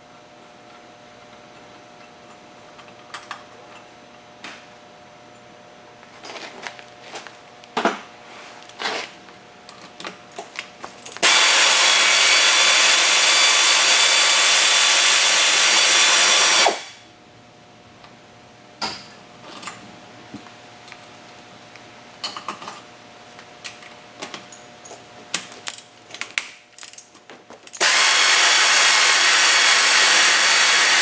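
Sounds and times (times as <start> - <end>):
power tool running: 11.2 - 17.0, 27.8 - 31.0.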